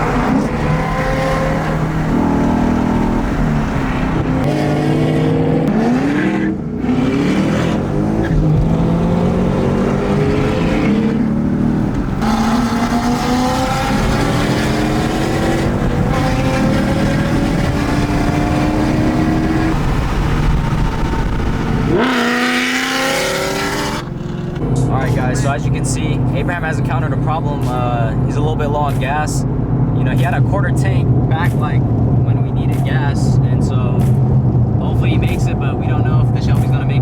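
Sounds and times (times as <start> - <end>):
car engine accelerating hard: 0.0 - 37.0.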